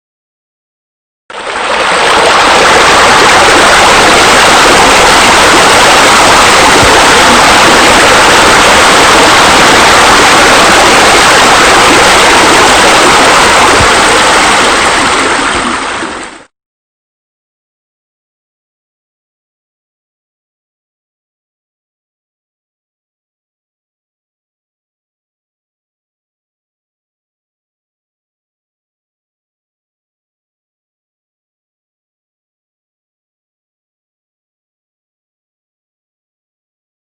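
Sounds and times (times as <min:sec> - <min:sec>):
running water rushing: 0:01.3 - 0:16.5.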